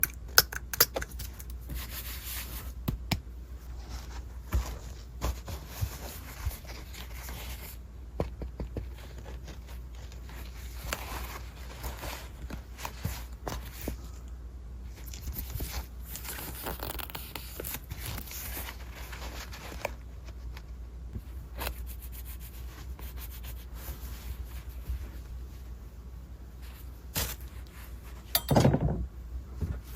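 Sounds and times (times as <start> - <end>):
packaging rubbing and rustling: 15.0 - 20.4.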